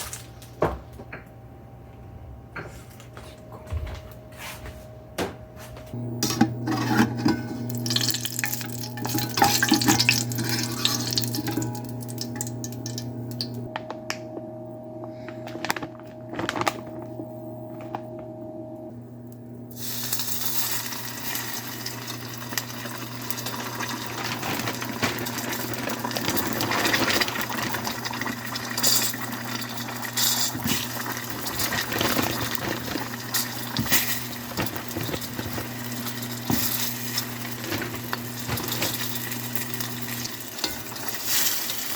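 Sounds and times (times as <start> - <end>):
low hum: 5.8 - 19.8
utensils and pots clattering: 6.2 - 13.6, 19.9 - 41.9
oil popping: 7.2 - 13.7, 21.5 - 41.9
food sizzling in hot oil: 7.7 - 13.7, 19.7 - 41.9.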